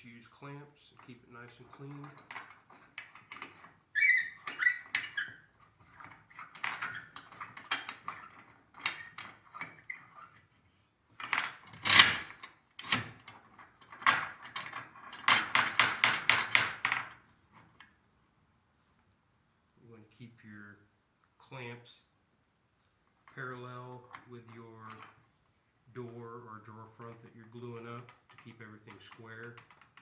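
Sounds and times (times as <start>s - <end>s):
metal clamps clanking and rattling: 1.6s - 10.4s, 11.2s - 17.2s.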